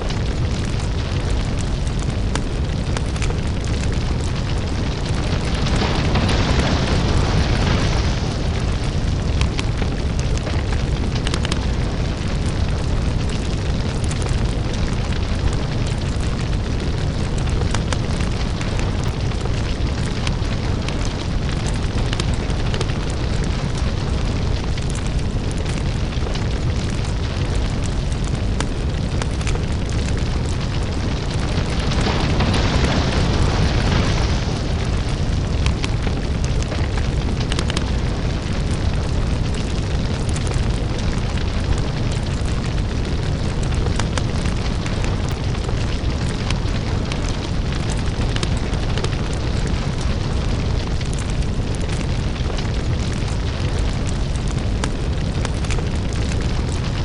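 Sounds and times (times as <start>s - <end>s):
deep rumble: 0.0s - 57.0s
lava crackles and pops: 0.0s - 57.0s.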